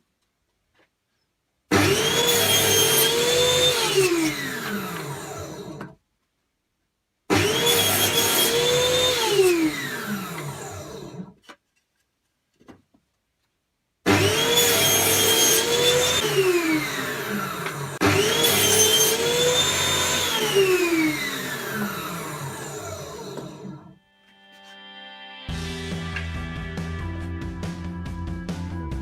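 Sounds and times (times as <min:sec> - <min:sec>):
electric drill motor whine: 0:01.7 - 0:06.0, 0:07.3 - 0:11.3, 0:14.1 - 0:24.0.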